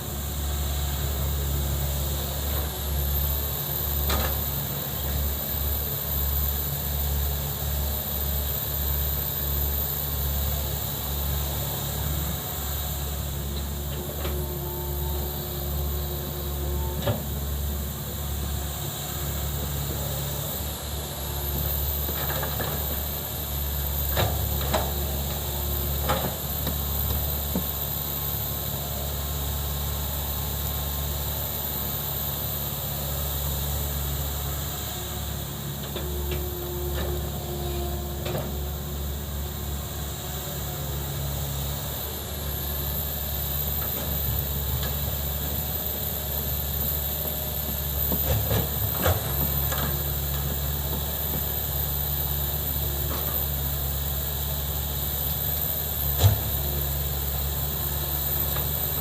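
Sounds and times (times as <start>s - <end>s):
excavator diesel engine running: 0.0s - 59.0s.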